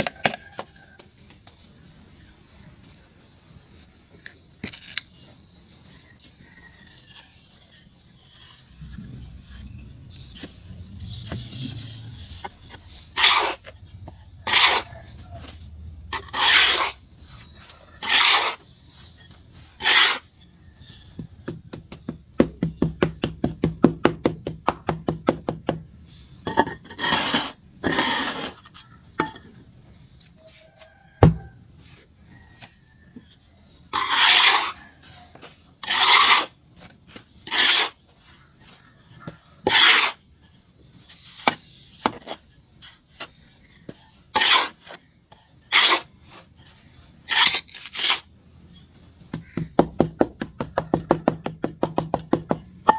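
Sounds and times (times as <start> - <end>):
charcoal rasping strokes: 6.8 - 21.0, 26.1 - 28.8, 33.9 - 52.1.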